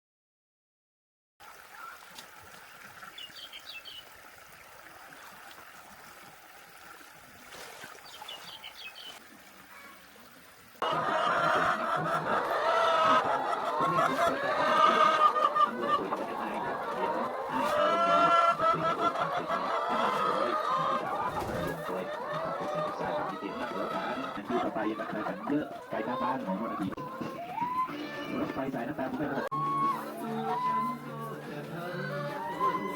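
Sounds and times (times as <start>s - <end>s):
hens clucking: 10.8s - 32.9s.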